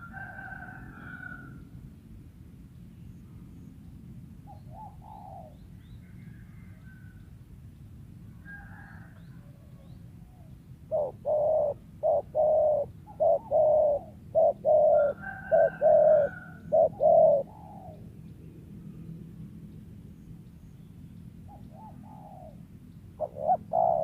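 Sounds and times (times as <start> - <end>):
dove cooing: 4.5 - 5.6, 8.4 - 18.1, 21.5 - 24.0.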